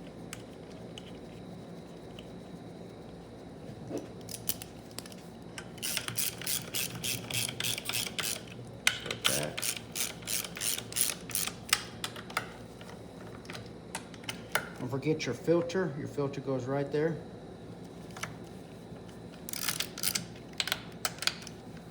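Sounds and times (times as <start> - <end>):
hand ratchet wrench clicking: 5.8 - 12.2, 19.5 - 21.5.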